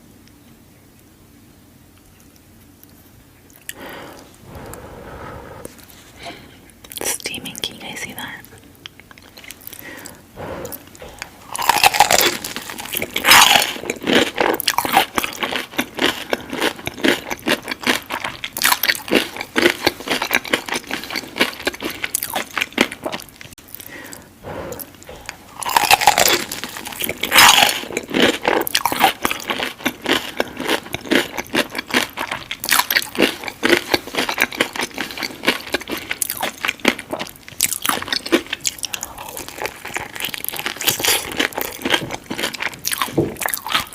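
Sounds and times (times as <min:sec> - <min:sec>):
crackly chewing: 0:01.9 - 0:43.9
crunchy bites into fried food: 0:11.2 - 0:23.8, 0:25.3 - 0:43.9.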